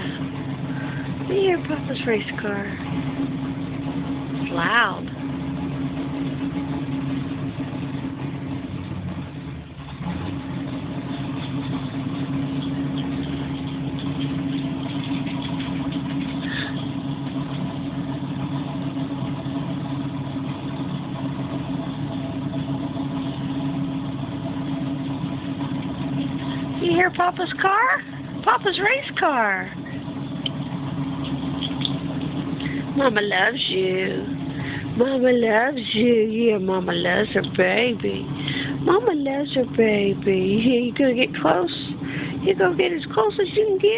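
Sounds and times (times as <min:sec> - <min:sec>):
race car engine idling: 0:00.0 - 0:43.9.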